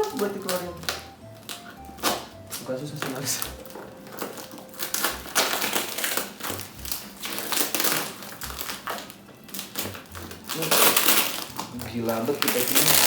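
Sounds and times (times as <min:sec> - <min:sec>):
packaging rustling and crinkling: 0:00.0 - 0:13.0.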